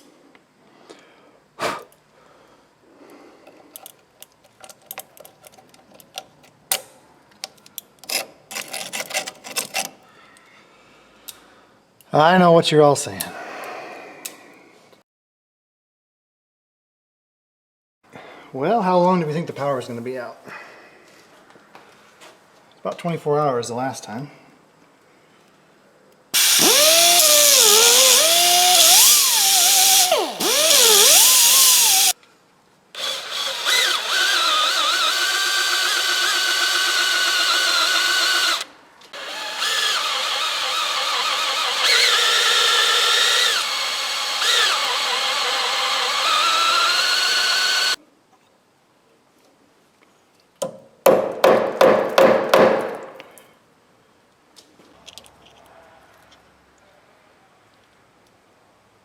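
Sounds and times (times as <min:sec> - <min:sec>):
drill stuttering pulses: 0:26.4 - 0:32.1, 0:33.0 - 0:48.0
power drill whining: 0:26.4 - 0:32.2, 0:33.0 - 0:48.0.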